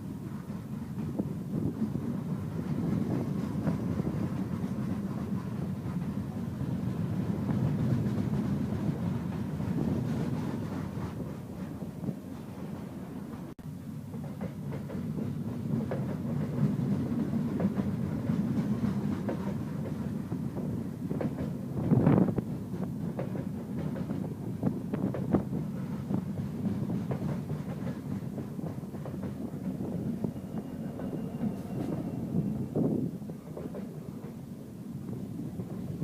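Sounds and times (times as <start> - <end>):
train rumbling: 0.0 - 36.0
train wheels clacking over rail joints: 14.1 - 24.4, 25.0 - 32.1.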